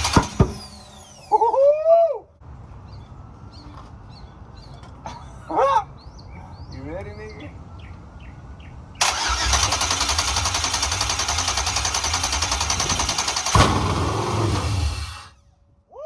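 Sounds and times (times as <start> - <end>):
engine bang: 0.0 - 1.4, 9.0 - 15.4
engine idling: 0.0 - 1.4, 9.0 - 15.4.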